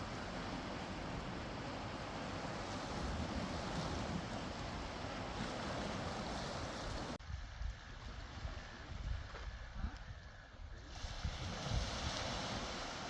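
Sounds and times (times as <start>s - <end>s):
ocean surf: 0.0s - 7.2s, 10.8s - 13.0s
wind: 0.0s - 13.0s.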